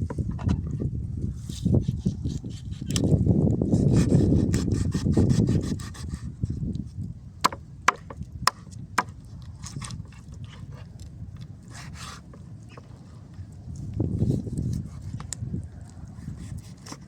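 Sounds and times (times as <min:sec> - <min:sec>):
rasping strokes on wood: 0:03.8 - 0:06.2, 0:11.7 - 0:12.8, 0:16.2 - 0:17.0.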